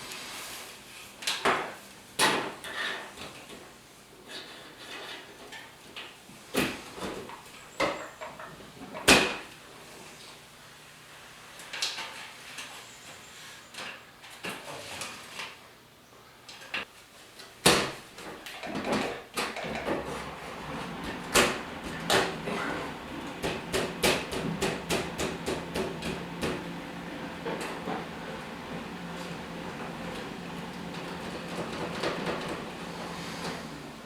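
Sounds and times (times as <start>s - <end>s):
loud sharp knocks: 23.4s - 26.7s.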